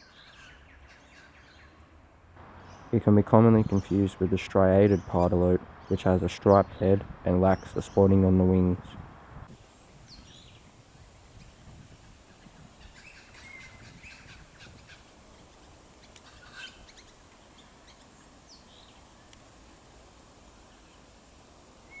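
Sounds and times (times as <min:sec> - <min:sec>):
low background hiss: 0:00.0 - 0:22.0
faint bird chirps: 0:10.0 - 0:19.3.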